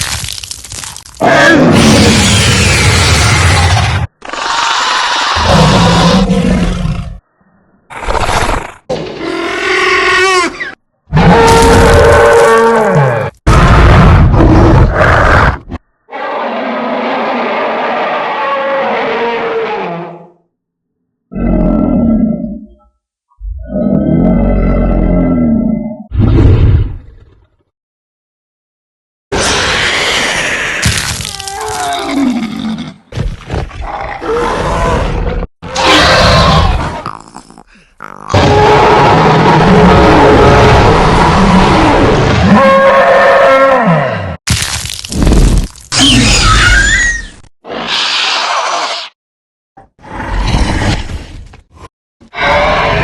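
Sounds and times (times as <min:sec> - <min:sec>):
animal roars: 0:01.2 - 0:07.2, 0:21.3 - 0:22.8, 0:23.4 - 0:27.5, 0:33.7 - 0:44.4, 0:50.0 - 0:51.4, 0:52.2 - 0:53.0.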